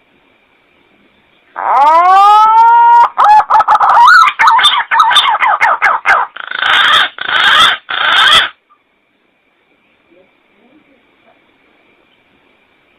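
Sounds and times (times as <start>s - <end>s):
harsh rasping bird bursts: 3.2s - 8.6s.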